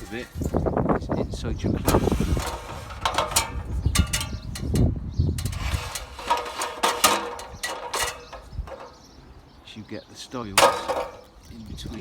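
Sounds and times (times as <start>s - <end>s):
ladder knocking and rattling: 1.8s - 9.1s, 10.6s - 11.3s.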